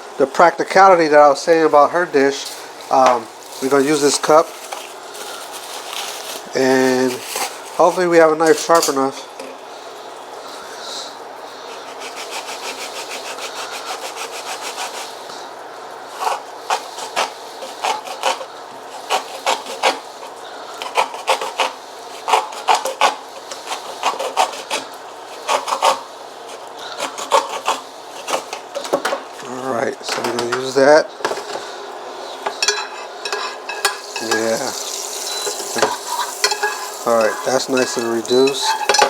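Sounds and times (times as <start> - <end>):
kitchen knife scraping: 11.8 - 15.1, 16.2 - 28.6, 32.5 - 39.0.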